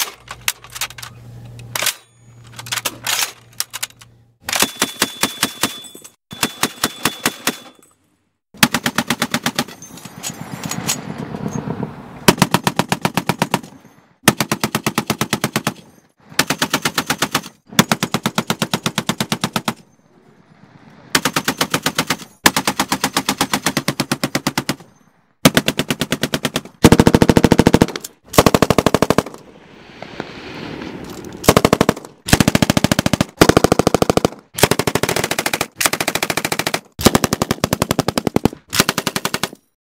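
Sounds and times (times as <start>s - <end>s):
automatic gunfire bursts: 25.4s - 29.4s, 31.4s - 39.6s.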